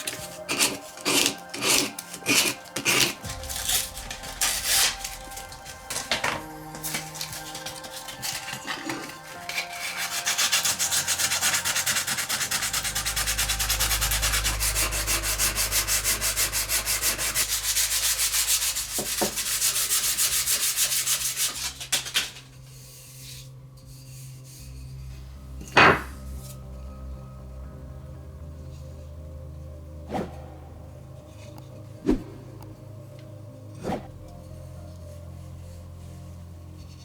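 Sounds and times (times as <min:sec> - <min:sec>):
sandpaper rubbing by hand: 0:00.0 - 0:06.2, 0:06.8 - 0:23.3.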